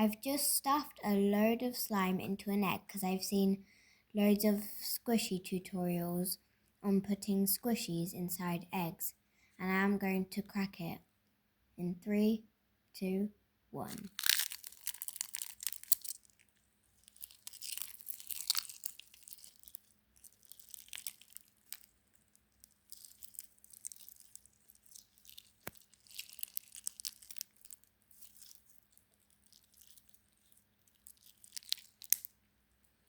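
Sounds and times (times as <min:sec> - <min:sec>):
eggshell cracking: 0:14.0 - 0:32.4.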